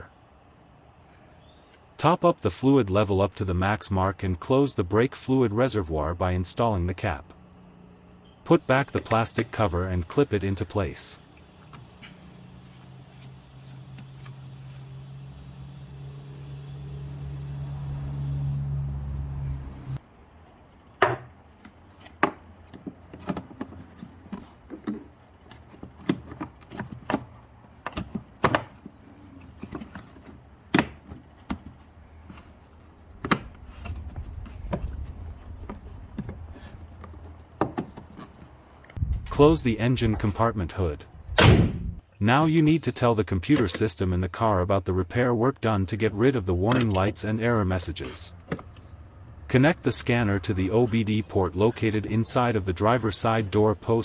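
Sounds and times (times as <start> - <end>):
low hum: 39.0 - 42.0.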